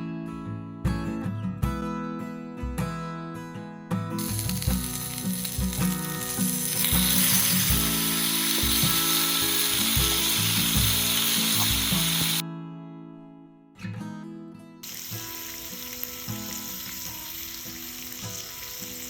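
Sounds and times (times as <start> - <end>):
soft acoustic guitar music: 0.0 - 19.0
steak sizzling: 4.2 - 12.4, 14.8 - 19.0.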